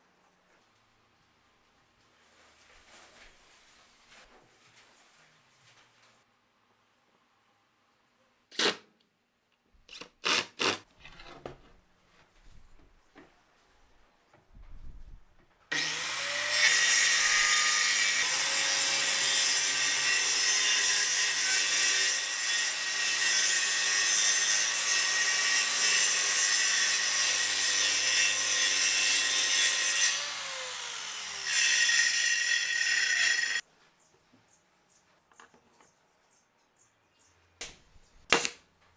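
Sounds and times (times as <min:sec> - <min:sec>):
circular saw cutting wood: 0:15.7 - 0:33.6.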